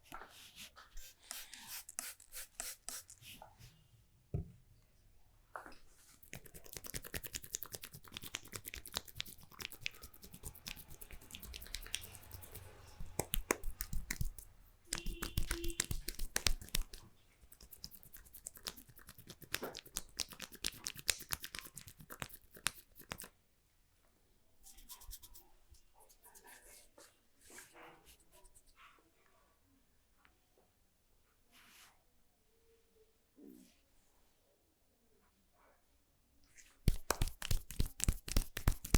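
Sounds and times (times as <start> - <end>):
hands rubbing and patting: 0.1 - 3.5, 6.2 - 23.3, 24.6 - 26.8, 36.8 - 38.9.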